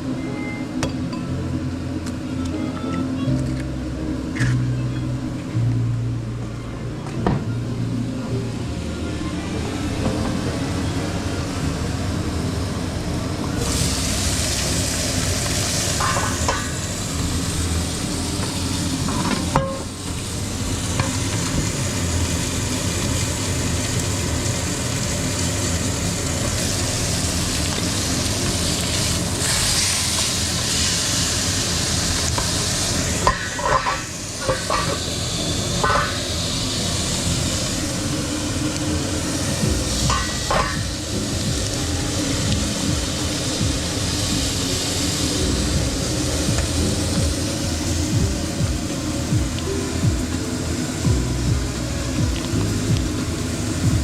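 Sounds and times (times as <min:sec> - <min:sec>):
steak sizzling in a pan: 0:13.6 - 0:54.0.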